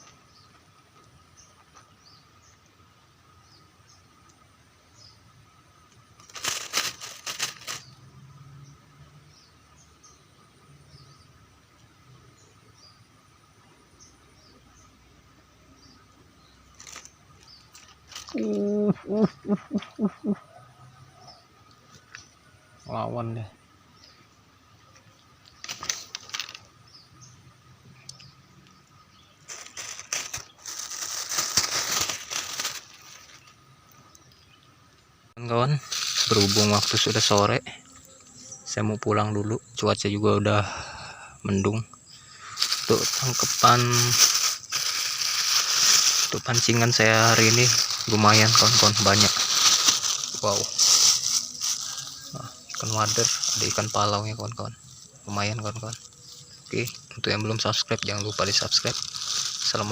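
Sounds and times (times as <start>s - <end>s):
rustling and crinkling: 5.9s - 8.0s, 16.6s - 18.6s, 24.9s - 26.8s, 29.4s - 34.3s, 35.8s - 38.2s, 42.6s - 59.9s
flapping rustling strokes: 6.2s - 8.0s, 29.5s - 33.5s, 42.6s - 52.1s
faint bird chirps: 7.7s - 59.9s.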